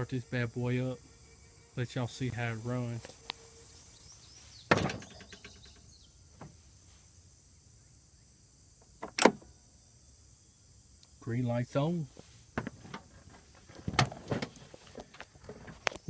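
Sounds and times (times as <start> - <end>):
crickets chirping: 0.0 - 16.0
brief rattle: 4.7 - 5.8.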